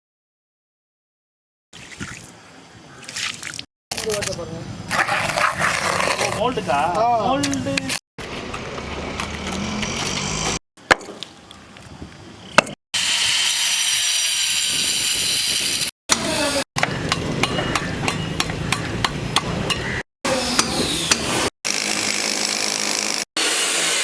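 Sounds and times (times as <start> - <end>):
power tool running: 8.3 - 10.6, 13.0 - 16.6, 20.3 - 24.0.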